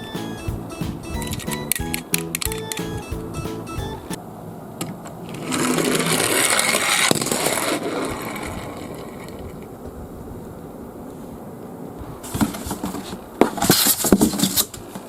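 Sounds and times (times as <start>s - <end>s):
toy truck wheels whirring rattle: 5.2s - 9.4s.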